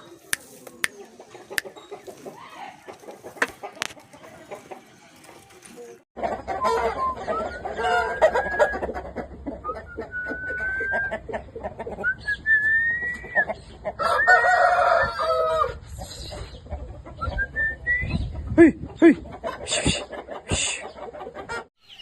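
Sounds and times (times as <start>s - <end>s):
chickens clucking and squawking: 0.0s - 22.0s
roosters crowing: 13.9s - 15.9s.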